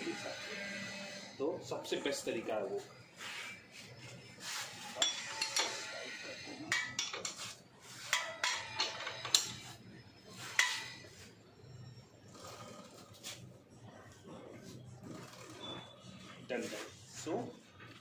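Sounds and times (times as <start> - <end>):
metal tools clinking on wheel: 4.9 - 7.4, 8.1 - 9.8.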